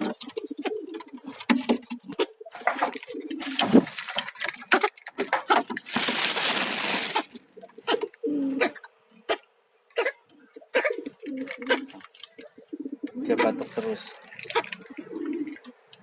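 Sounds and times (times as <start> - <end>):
pigeons cooing: 0.0 - 4.6, 5.9 - 8.9, 10.0 - 16.0
dense rustling: 3.4 - 4.5, 5.8 - 7.4
pigeon coughing: 7.8 - 11.9.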